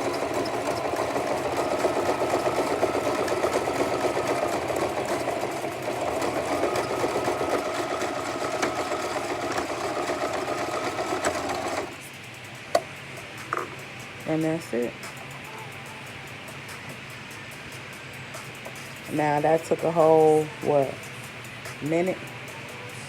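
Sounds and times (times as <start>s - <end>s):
sewing machine running: 0.0s - 12.1s.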